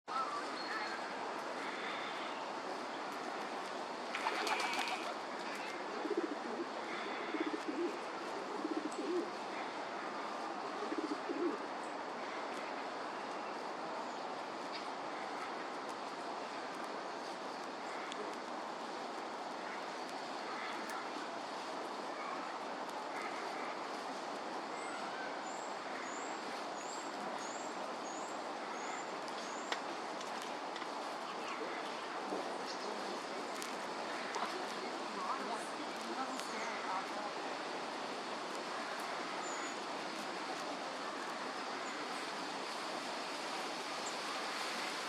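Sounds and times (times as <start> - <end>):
steady background hiss: 0.1 - 45.0
steady rushing background noise: 0.1 - 45.0
pigeon cooing: 5.9 - 9.3, 10.8 - 11.6.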